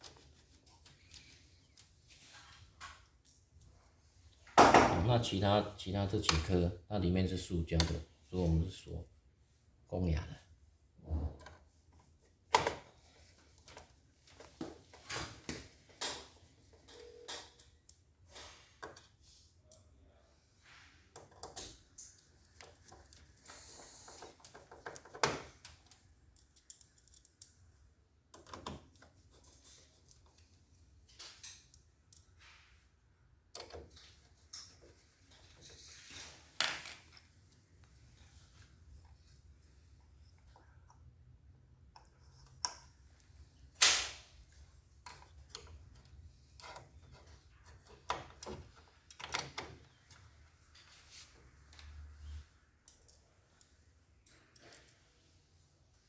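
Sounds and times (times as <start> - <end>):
screwdriver screwing parts: 45.0 - 50.2.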